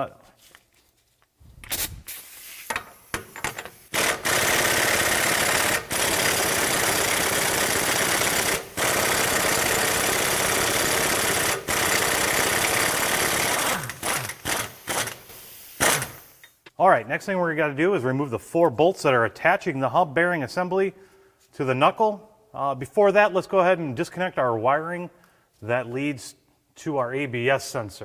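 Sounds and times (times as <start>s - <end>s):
impact wrench hammering: 2.7s - 16.6s.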